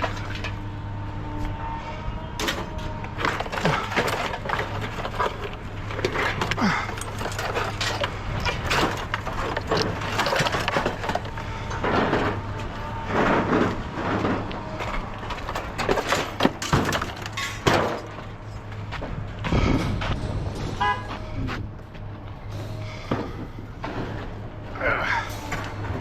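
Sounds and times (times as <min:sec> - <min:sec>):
scrap knocking and clattering: 0:02.4 - 0:21.4.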